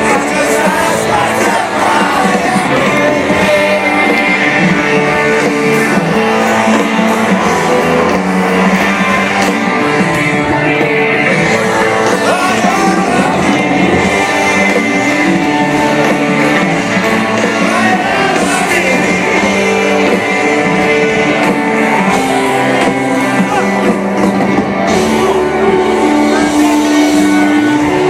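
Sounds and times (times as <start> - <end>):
electric guitars: 0.0 - 28.0
live rock band: 0.0 - 28.0
person singing: 0.0 - 28.0.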